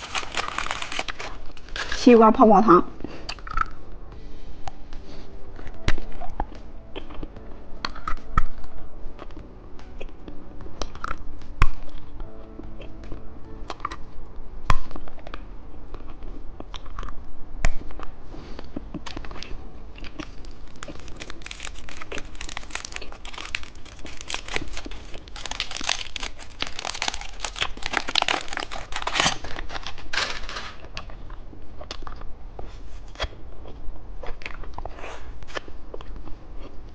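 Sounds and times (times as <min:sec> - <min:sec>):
plastic wrapper crinkling: 0:00.0 - 0:02.1, 0:19.0 - 0:31.1.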